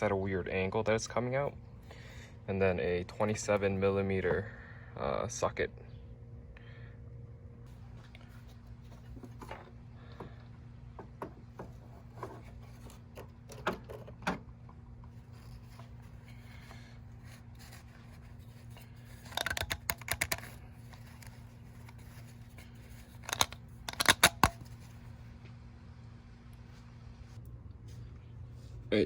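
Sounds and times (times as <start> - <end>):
low hum: 0.0 - 29.0.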